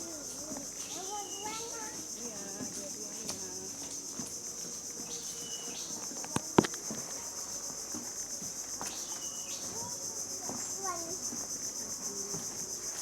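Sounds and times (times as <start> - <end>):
high-pitched insect drone: 0.0 - 13.0.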